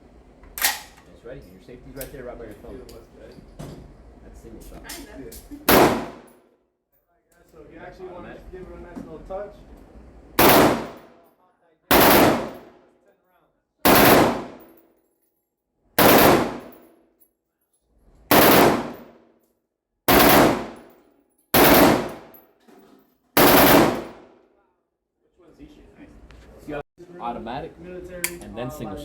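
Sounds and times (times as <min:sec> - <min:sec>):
loud gunshots with echo: 0:05.7 - 0:06.3, 0:10.4 - 0:11.1, 0:11.9 - 0:12.7, 0:13.9 - 0:14.7, 0:16.0 - 0:16.8, 0:18.3 - 0:19.1, 0:20.1 - 0:20.9, 0:21.6 - 0:22.3, 0:23.4 - 0:24.3.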